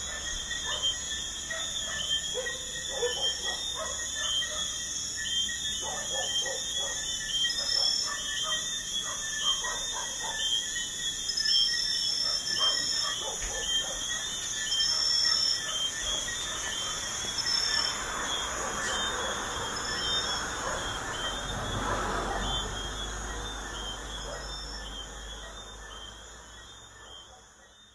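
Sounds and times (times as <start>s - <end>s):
crickets chirping: 0.0s - 27.9s
high insect trill: 0.0s - 27.9s
highway traffic rumble: 16.2s - 26.5s.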